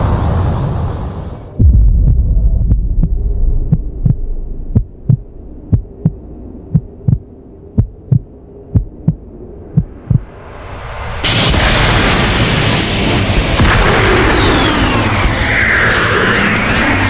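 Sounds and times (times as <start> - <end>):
low rumble: 0.0 - 17.0
steady low hum: 1.2 - 12.2
heartbeat thumps: 1.6 - 10.3.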